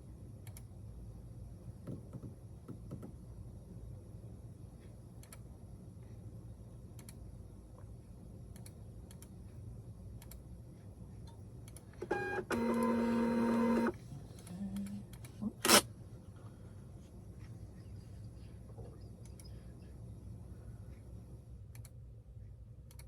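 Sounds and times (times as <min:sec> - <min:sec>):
label printer whine: 0:12.0 - 0:14.0.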